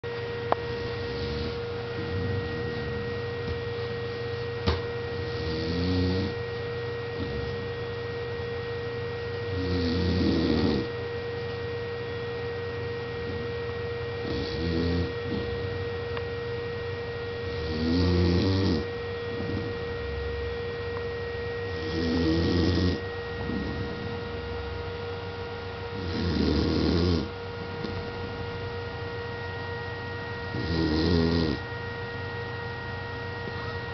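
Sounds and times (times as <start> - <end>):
steady hum: 0.0 - 33.9
pet snoring: 0.8 - 3.2, 5.1 - 6.4, 7.2 - 7.7, 9.4 - 11.0, 14.2 - 15.6, 17.4 - 19.9, 21.7 - 24.3, 25.9 - 28.1, 30.5 - 31.7.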